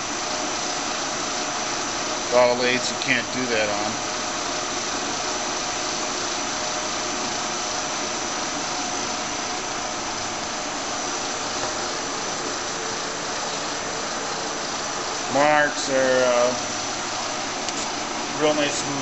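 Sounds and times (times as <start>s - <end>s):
lathe mechanical hum: 0.0s - 19.0s
high-pitched whine: 5.8s - 19.0s.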